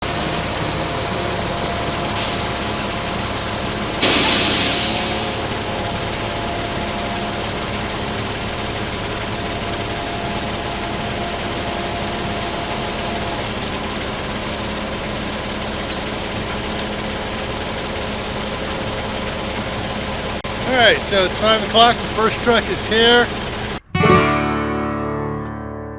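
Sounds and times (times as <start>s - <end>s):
diesel truck engine running: 0.0s - 23.9s
air brake hiss: 2.0s - 2.7s, 4.0s - 5.5s.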